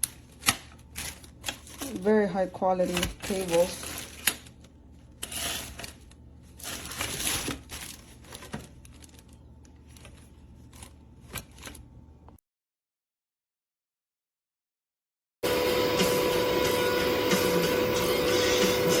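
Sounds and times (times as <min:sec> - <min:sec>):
plastic packaging rustling: 0:00.0 - 0:12.0.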